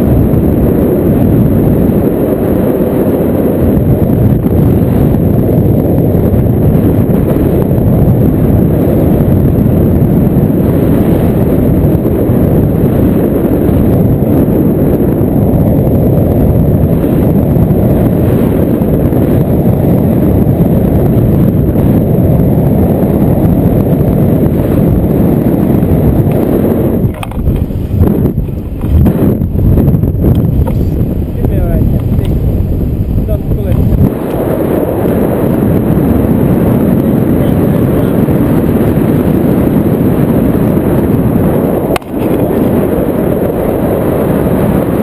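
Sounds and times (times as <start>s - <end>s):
wind buffeting microphone: 0.0s - 45.0s.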